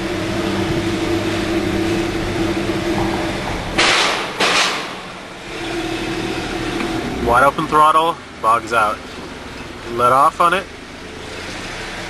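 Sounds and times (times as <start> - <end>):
misfiring car engine drone: 0.0 - 12.0.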